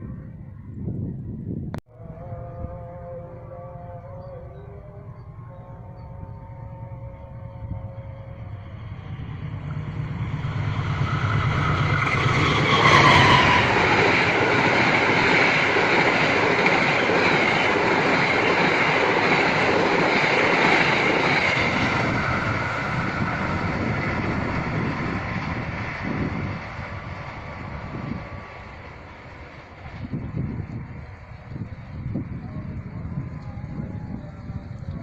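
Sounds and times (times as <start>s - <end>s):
passenger train passing: 2.0s - 35.0s.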